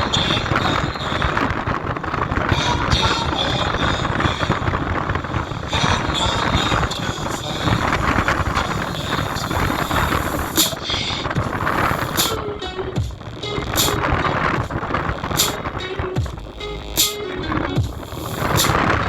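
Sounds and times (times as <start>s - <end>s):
bass-heavy music from speaker: 9.7s - 19.0s.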